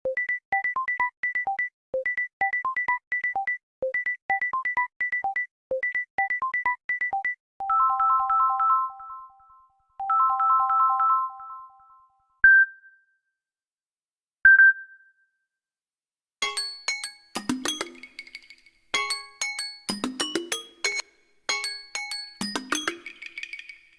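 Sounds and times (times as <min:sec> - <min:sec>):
bouncy electronic ringtone: 0:00.1 - 0:12.9, 0:16.4 - 0:18.1, 0:19.0 - 0:23.5.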